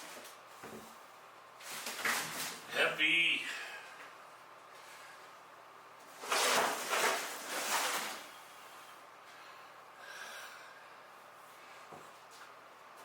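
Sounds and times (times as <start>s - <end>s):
person breathing out hard: 9.3s - 11.9s.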